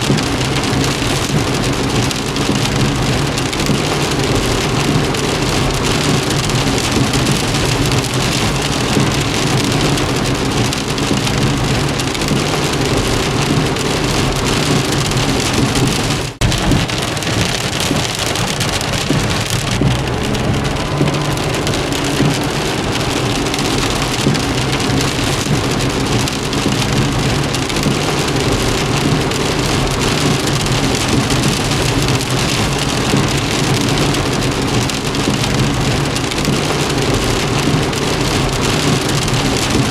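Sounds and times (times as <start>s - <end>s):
heavy rain drumming on car: 0.0s - 39.9s
low car hum: 0.0s - 39.9s.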